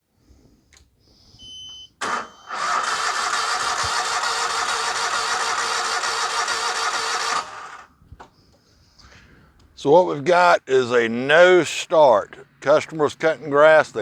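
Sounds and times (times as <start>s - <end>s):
electronic beep: 1.4s - 2.6s
mower engine running: 2.1s - 7.9s.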